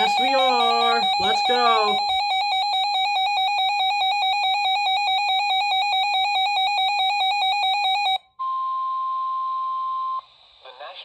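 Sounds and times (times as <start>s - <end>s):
rapidly pulsing shrill alarm tone: 0.0s - 2.2s
steady single alarm tone: 0.0s - 8.2s.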